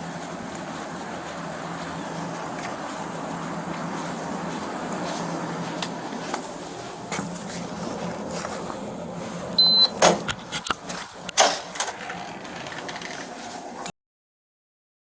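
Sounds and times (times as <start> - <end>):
steady low hum: 0.0 - 13.9
short high electronic beep: 9.6 - 9.9.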